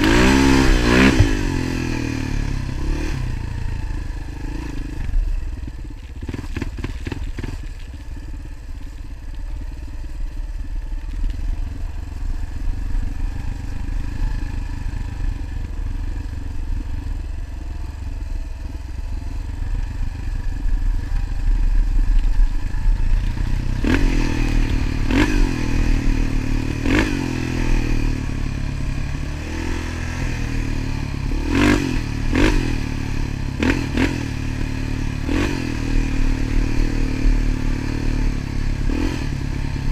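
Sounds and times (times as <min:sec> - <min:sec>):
motorcycle engine revving: 0:00.0 - 0:39.9
steady low rumble: 0:00.0 - 0:39.9.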